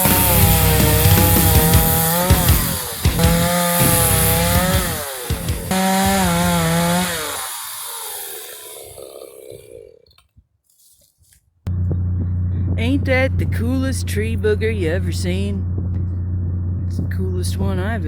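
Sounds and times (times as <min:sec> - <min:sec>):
chainsaw cutting branches: 0:00.0 - 0:10.2.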